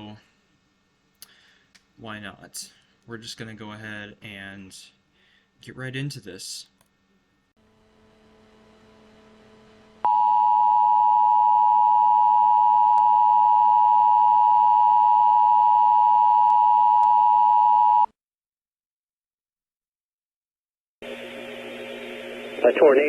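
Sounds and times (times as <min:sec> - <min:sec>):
emergency alert tone: 0:10.1 - 0:18.1.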